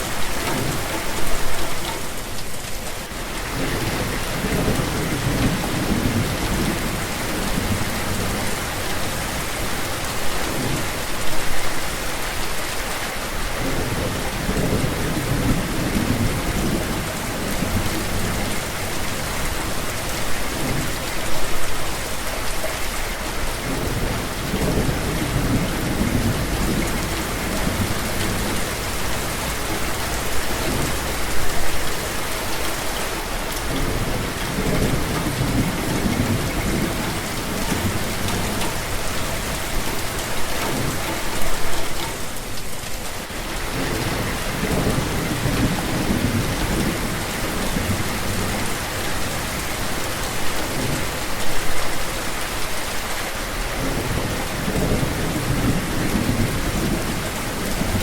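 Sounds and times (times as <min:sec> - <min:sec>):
heavy rain falling: 0:00.0 - 0:58.0
low rumbles of thunder: 0:13.6 - 0:18.9, 0:23.6 - 0:31.4, 0:43.7 - 0:49.4, 0:53.8 - 0:58.0.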